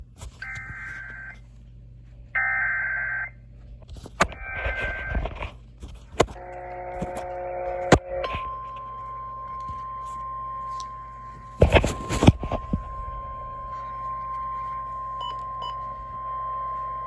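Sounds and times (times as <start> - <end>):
steady attention tone: 6.2 - 17.0
chord of steady tones: 6.4 - 17.0.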